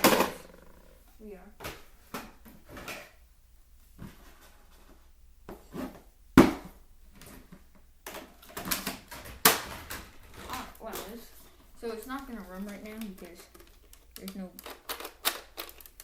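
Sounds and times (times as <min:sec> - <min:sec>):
plastic parts clattering: 0:08.0 - 0:16.0
plastic clicks: 0:12.1 - 0:16.0.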